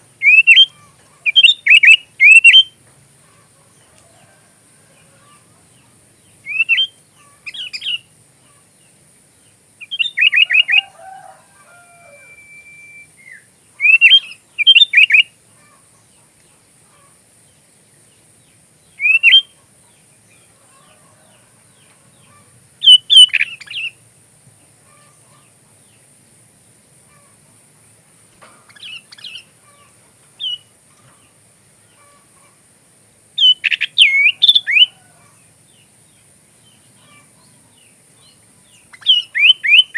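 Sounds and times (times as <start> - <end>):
bird chirping phrases: 0.0 - 3.9, 5.0 - 10.9, 11.9 - 24.0, 28.7 - 32.6, 33.4 - 39.9
faint high hiss: 0.0 - 39.9.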